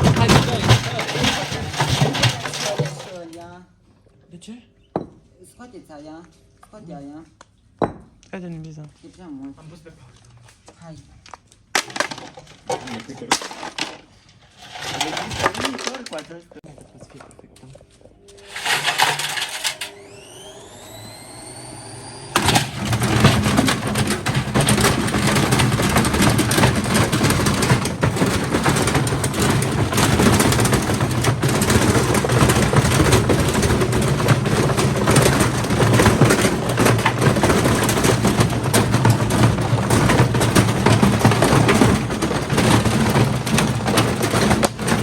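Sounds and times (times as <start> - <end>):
loud rattling and banging: 0.0 - 3.5, 11.8 - 16.4, 18.5 - 21.2, 22.1 - 45.0
washing machine motor whining: 18.2 - 45.0.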